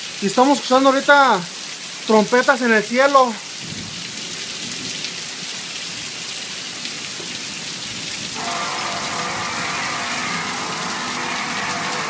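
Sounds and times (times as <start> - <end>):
rain hissing: 0.0 - 12.0
long trumpet-like blare: 8.4 - 12.0.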